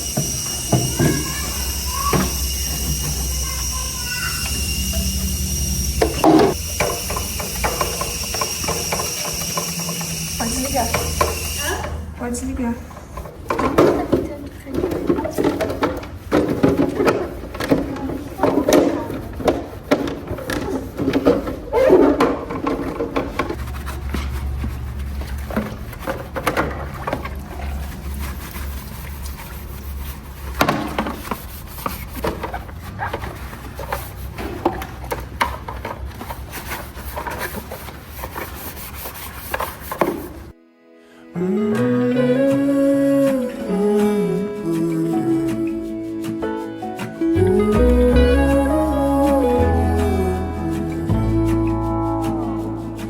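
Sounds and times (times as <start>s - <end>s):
scrubbing and rubbing: 0.0s - 40.6s, 42.3s - 53.0s
knocks and clatter: 13.0s - 27.9s.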